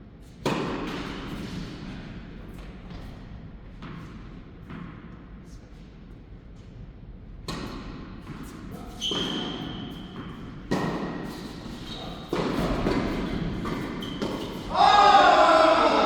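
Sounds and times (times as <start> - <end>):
rackets hitting tennis balls: 9.1 - 14.8.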